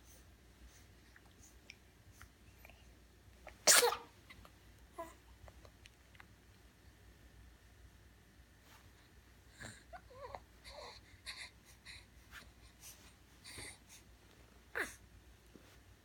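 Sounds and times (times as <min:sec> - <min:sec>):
sharp sneeze: 0:03.6 - 0:04.2.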